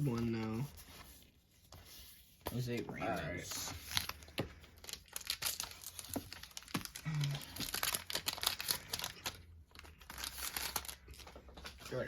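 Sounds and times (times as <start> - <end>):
foil wrapper crinkling: 3.8 - 12.0
foil wrapper tearing: 4.8 - 11.3.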